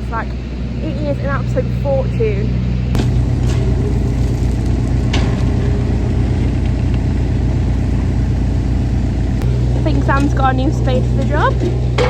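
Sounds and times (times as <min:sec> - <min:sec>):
farm machinery engine running: 0:00.0 - 0:12.0.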